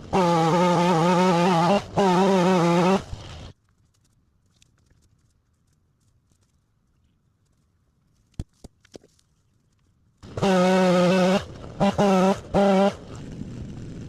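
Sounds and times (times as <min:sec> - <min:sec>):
chainsaw cutting at full throttle: 0:00.0 - 0:03.4, 0:10.2 - 0:13.2.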